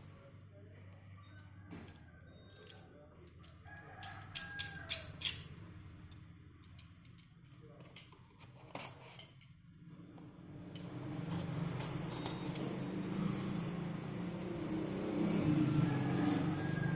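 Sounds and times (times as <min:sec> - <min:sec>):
rooster crowing: 0:03.5 - 0:05.3, 0:14.6 - 0:16.9.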